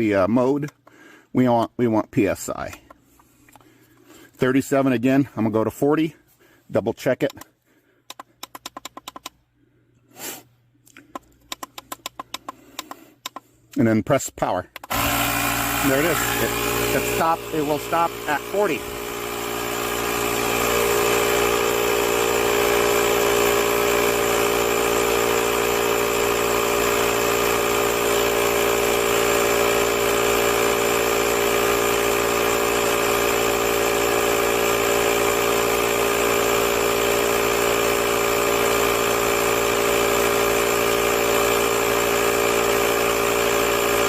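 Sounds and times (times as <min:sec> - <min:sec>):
electric air compressor running: 0:14.8 - 0:44.0.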